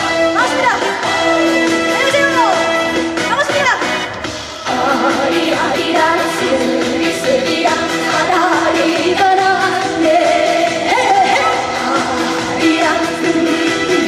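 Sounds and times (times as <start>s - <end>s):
loud backing band: 0.0s - 14.0s
woman singing: 4.6s - 14.0s.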